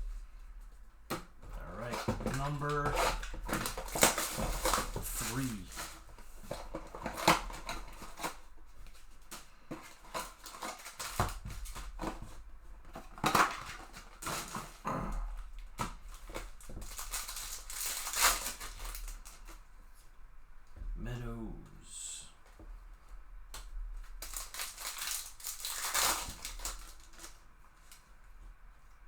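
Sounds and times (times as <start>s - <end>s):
wrappers crinkling and tearing: 1.4s - 14.8s, 15.4s - 19.6s, 24.0s - 28.1s
cards rustling and sliding: 1.9s - 6.7s.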